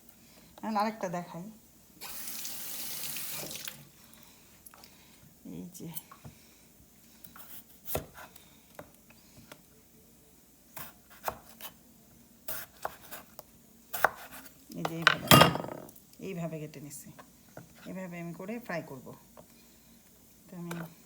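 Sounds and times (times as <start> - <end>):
knife chopping on cutting board: 7.4 - 8.3, 10.8 - 11.7, 12.5 - 13.3, 13.9 - 14.5.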